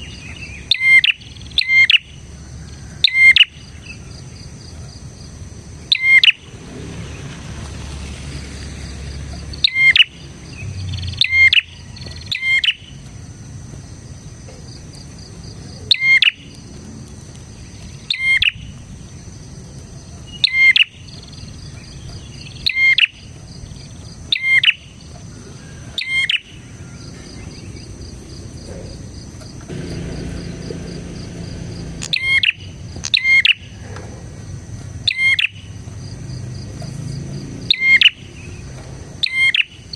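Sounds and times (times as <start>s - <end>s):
bird singing sharp notes: 29.7s - 33.7s.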